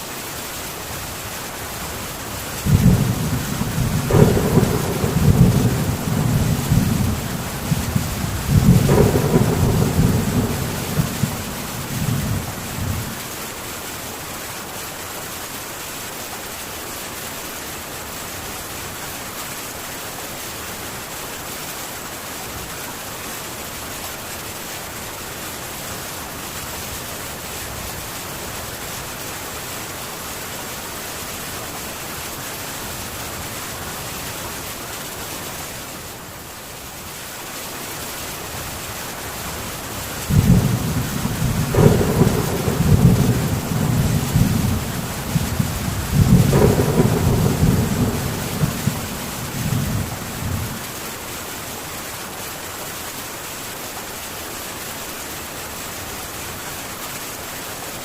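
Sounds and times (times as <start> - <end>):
heavy rain on a tin roof: 0.0 - 58.0
low rumble of thunder: 2.6 - 13.2, 40.2 - 51.0.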